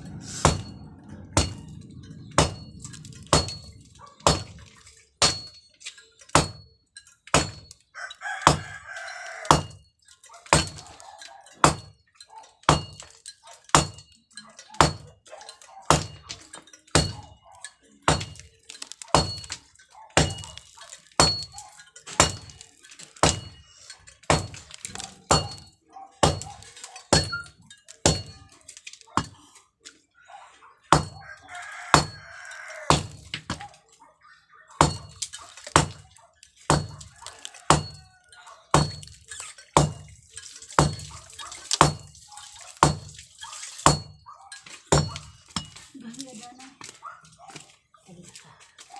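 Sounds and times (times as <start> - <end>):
hammer blows with metallic ring: 0.0 - 7.8, 9.4 - 9.9, 11.6 - 12.0, 12.6 - 14.2, 14.8 - 15.1, 15.9 - 17.4, 19.2 - 19.6, 20.2 - 22.6, 23.2 - 26.6, 27.2 - 28.5, 32.0 - 32.2, 34.8 - 36.0, 37.7 - 38.1, 38.8 - 39.2, 43.9 - 44.2
rooster crowing: 8.0 - 9.7, 31.0 - 33.1.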